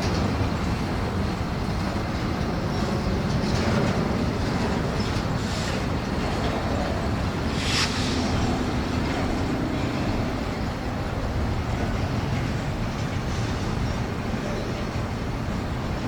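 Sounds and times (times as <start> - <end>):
train wheels rumbling on rail: 0.0 - 16.0
brief hiss: 7.2 - 9.8.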